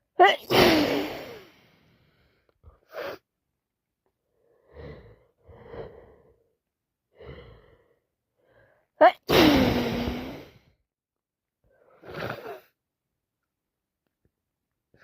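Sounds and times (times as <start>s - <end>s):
woman sneezing: 0.2s - 1.4s, 9.0s - 10.4s.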